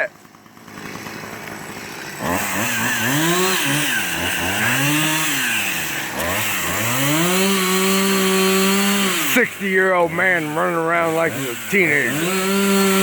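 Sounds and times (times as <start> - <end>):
chainsaw revving: 0.0 - 13.0.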